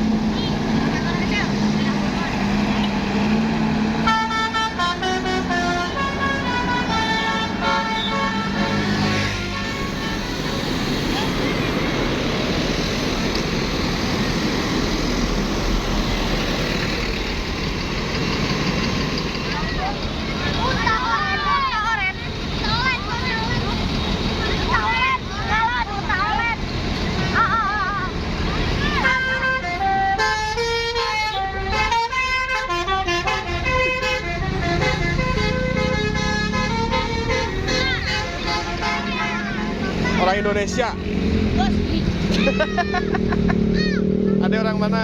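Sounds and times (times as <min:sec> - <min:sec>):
diesel engine idling: 0:00.0 - 0:45.0
bus horn playing melody: 0:04.0 - 0:10.7, 0:29.0 - 0:40.1.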